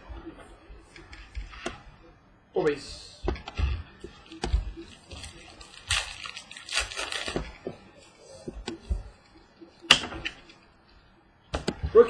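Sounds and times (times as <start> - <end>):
cards rustling and clicking: 4.0 - 9.4.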